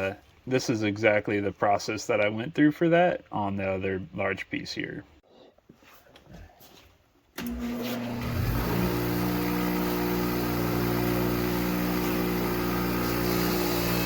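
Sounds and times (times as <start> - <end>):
power wire brush scouring metal: 7.4 - 14.0.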